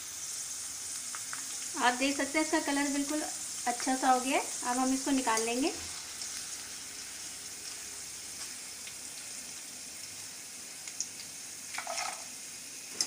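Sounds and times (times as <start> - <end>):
corn sizzling in hot oil: 0.0 - 13.0.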